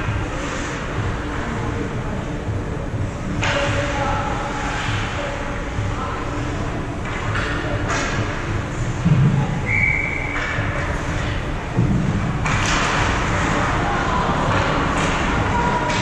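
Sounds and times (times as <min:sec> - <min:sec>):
high whistle-like tone: 0:09.6 - 0:10.6.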